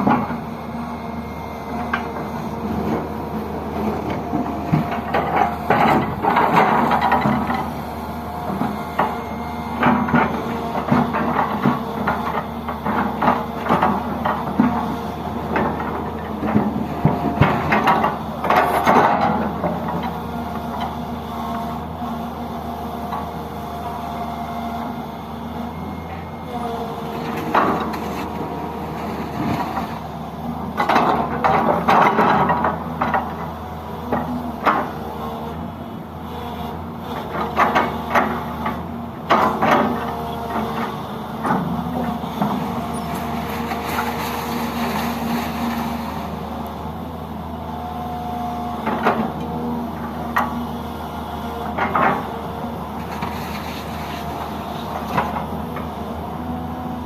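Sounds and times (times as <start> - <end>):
heavy diesel machinery running: 0.0 - 57.0.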